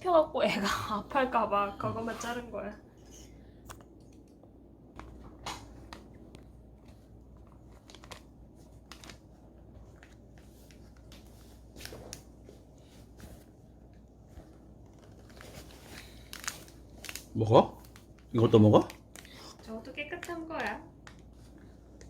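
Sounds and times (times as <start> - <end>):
low steady hum: 0.0 - 22.0
soft rustling: 6.4 - 18.2.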